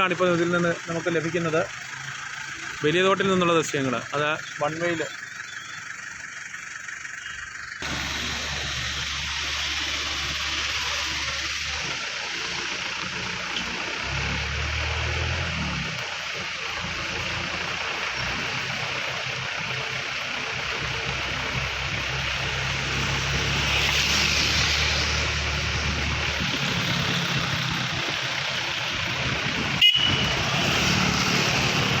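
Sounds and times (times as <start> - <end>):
road vehicles passing: 0.0 - 32.0
car horn toot: 29.7 - 30.6.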